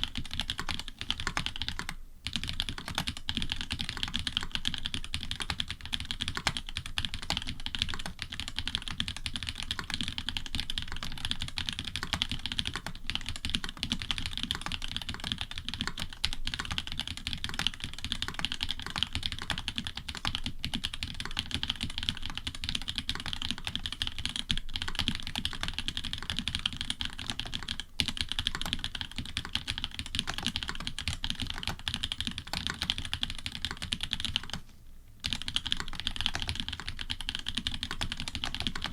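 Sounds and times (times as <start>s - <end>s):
mechanical keyboard typing: 0.0s - 34.6s, 35.2s - 38.9s.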